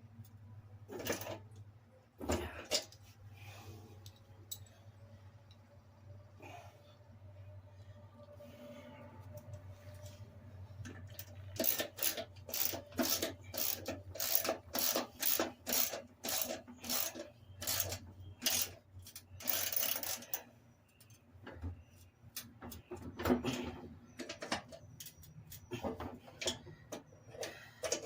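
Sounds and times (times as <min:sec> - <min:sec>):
socket ratchet rasping: 0:11.5 - 0:20.4.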